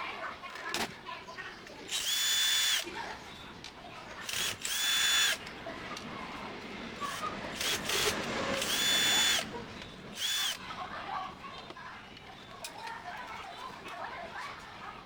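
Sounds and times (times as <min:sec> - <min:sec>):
plastic parts clicking and rattling: 0:00.5 - 0:01.0
electric screwdriver whining: 0:01.9 - 0:02.9, 0:04.3 - 0:05.4, 0:07.0 - 0:09.5, 0:10.2 - 0:10.6.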